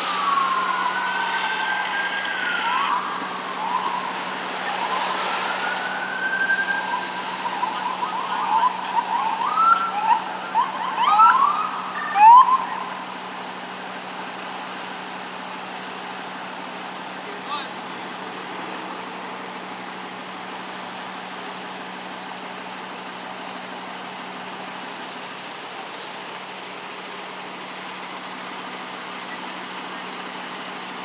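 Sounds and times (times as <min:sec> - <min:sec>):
emergency siren wailing and yelping: 0:00.0 - 0:16.5.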